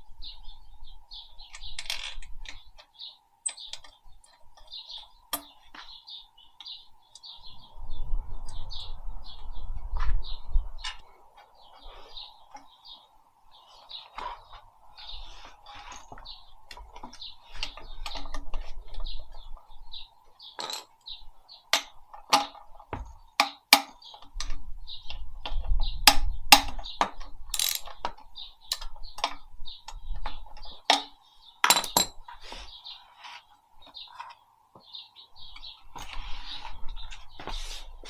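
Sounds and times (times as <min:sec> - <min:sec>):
small birds chirping: 0:00.0 - 0:38.0
metallic clicks of hand tools: 0:21.7 - 0:22.6, 0:23.4 - 0:30.0, 0:30.6 - 0:32.2.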